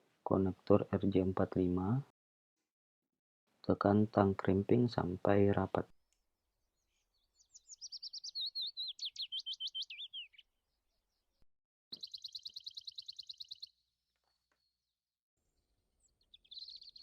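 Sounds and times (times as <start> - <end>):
songbird chirping and trilling: 6.6 - 17.0.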